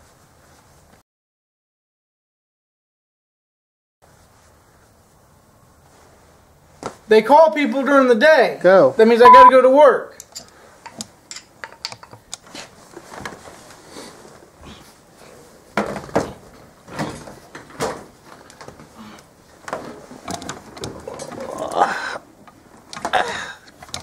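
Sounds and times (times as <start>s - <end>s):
tools and parts clattering: 10.2s - 12.3s, 15.8s - 18.9s, 19.6s - 21.6s, 22.8s - 24.0s.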